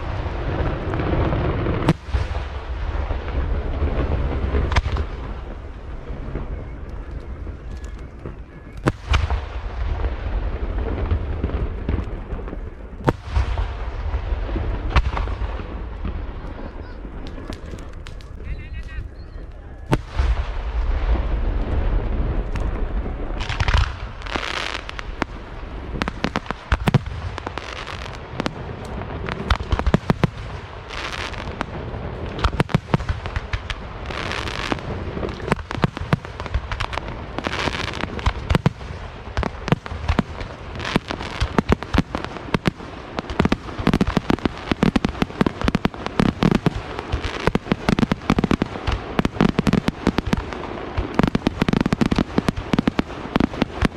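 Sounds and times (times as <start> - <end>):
fireworks bangs and crackling: 0.0 - 53.9
fireworks hissing: 23.4 - 53.9.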